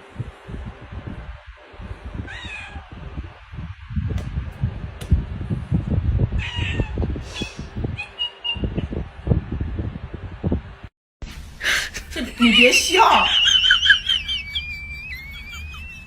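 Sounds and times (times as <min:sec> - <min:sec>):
low rumbling and bumping: 0:00.2 - 0:08.0
cat meowing: 0:02.3 - 0:03.0, 0:06.4 - 0:08.1.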